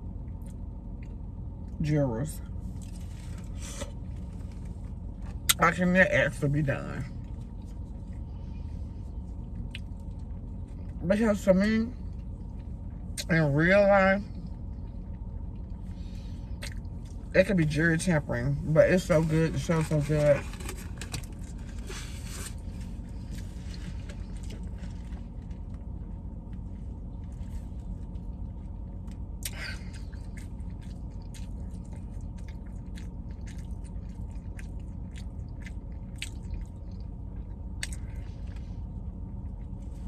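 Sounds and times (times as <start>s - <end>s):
low hum in car cabin: 0.0s - 40.0s
person chewing food: 7.2s - 11.0s, 14.3s - 17.2s, 20.4s - 40.0s.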